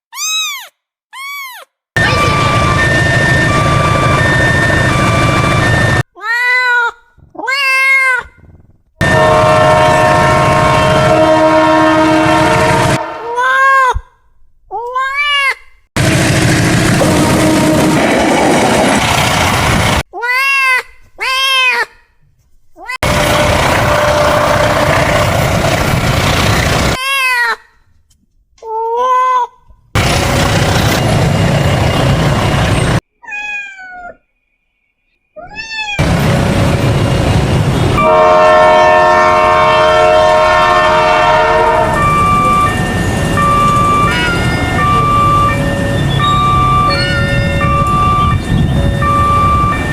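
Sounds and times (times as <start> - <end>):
cat meowing: 0.1 - 2.2, 6.2 - 8.6, 33.2 - 34.2, 35.4 - 36.0
running train rushing noise: 2.0 - 6.0, 9.0 - 13.3, 16.0 - 20.0, 23.0 - 27.0, 30.0 - 33.0, 36.0 - 49.9
two-tone electronic warning signal: 2.0 - 6.0, 9.0 - 13.2, 38.0 - 49.9
train horn chord: 9.0 - 13.4, 17.0 - 18.1, 23.0 - 25.4, 38.0 - 45.9.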